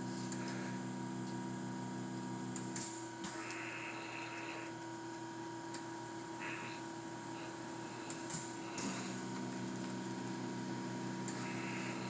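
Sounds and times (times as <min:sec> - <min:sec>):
low electrical hum: 0:00.0 - 0:12.0.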